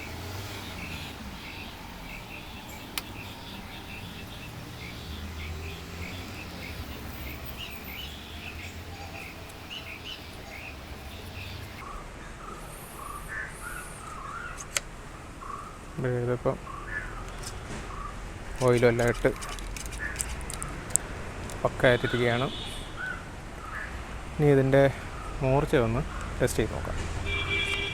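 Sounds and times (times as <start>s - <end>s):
bird chirping high notes: 0.0s - 14.6s.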